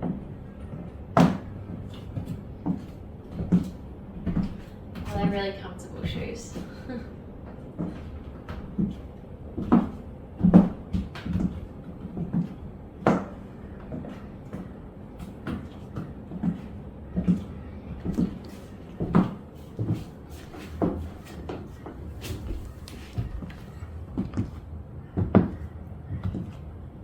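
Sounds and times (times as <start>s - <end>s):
high heel footsteps on hard floor: 19.0s - 24.6s.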